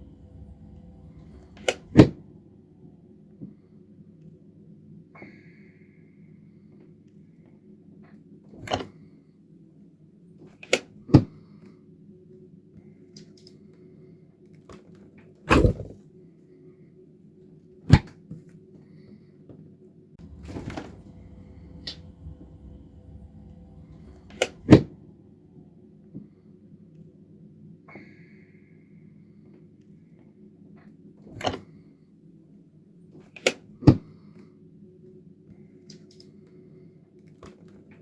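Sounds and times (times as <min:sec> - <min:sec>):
steady low hum: 0:00.0 - 0:03.9, 0:20.2 - 0:26.4.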